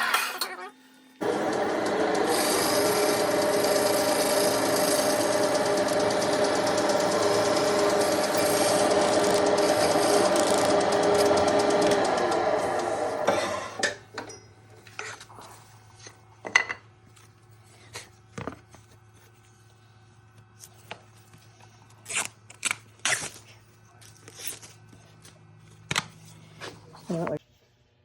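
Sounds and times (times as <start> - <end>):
lathe tool rasping into wood: 1.2 - 13.9.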